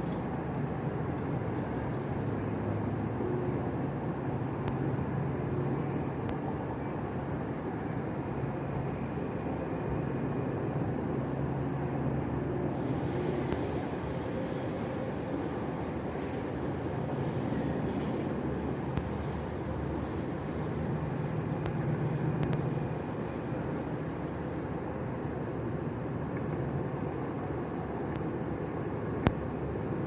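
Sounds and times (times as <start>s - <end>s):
distant vehicles rumbling: 9.2s - 24.4s.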